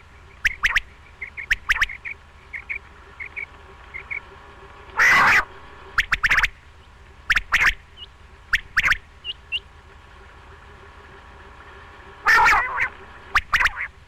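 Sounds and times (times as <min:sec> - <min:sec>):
faint chirps: 0:00.0 - 0:13.9
quail calling: 0:00.3 - 0:04.3, 0:04.9 - 0:09.7, 0:12.2 - 0:14.0.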